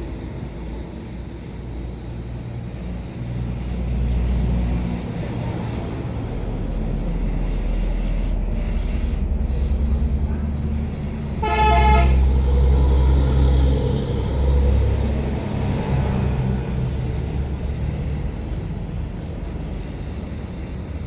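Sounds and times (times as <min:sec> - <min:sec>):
vehicle engine rumble: 0:00.0 - 0:21.0
car horn toot: 0:11.4 - 0:12.3.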